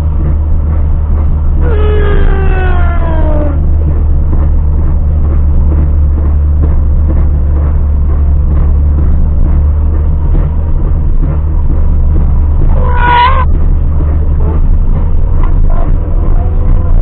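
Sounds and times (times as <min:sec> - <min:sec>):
car road and engine rumble: 0:00.0 - 0:17.0
metal-on-metal scraping from wheel: 0:12.7 - 0:13.5.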